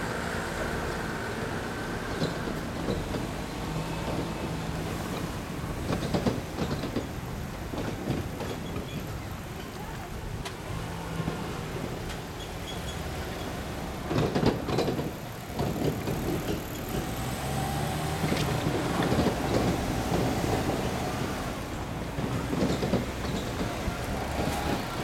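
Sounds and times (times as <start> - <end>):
vehicle engines running: 0.0 - 25.0.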